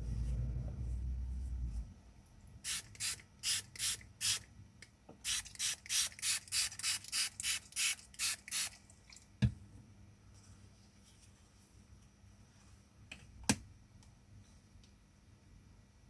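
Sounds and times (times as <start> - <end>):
spray bottle squirts: 5.2 - 8.8.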